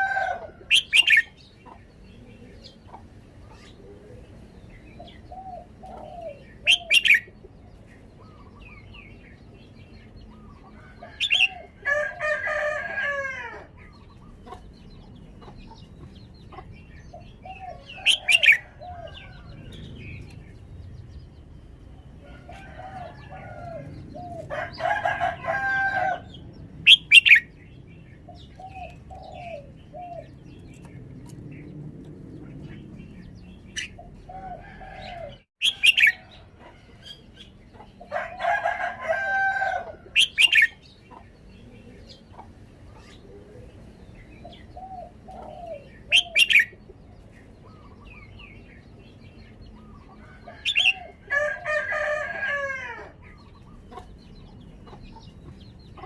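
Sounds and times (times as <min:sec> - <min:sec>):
rooster crowing: 0:00.0 - 0:01.2, 0:10.8 - 0:13.7, 0:22.2 - 0:26.3, 0:34.3 - 0:37.0, 0:38.1 - 0:40.6, 0:50.2 - 0:53.2.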